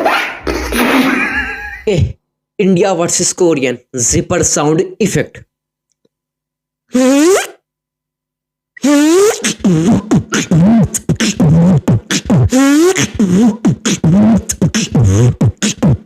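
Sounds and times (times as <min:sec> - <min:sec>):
beatboxer imitating a zipper: 0:06.9 - 0:07.6, 0:08.8 - 0:16.0.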